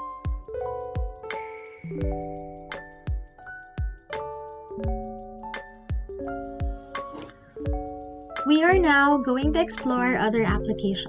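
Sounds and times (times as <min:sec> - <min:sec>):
ringing melody notes: 0:01.8 - 0:02.7
deep drum beat: 0:01.9 - 0:04.1, 0:07.7 - 0:08.1, 0:08.7 - 0:10.9.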